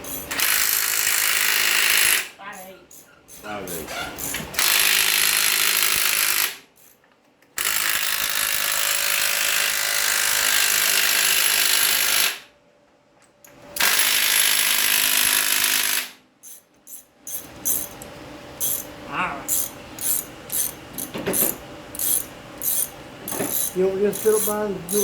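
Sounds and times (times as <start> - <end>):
power tool running: 13.8 - 16.2.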